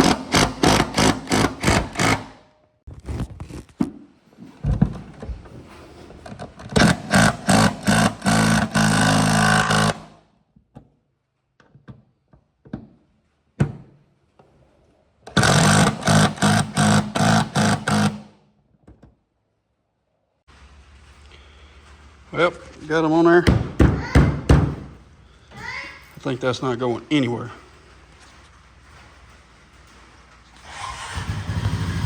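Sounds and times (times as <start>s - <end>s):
cordless power driver running: 0.0s - 2.3s, 6.8s - 10.1s, 15.3s - 18.2s.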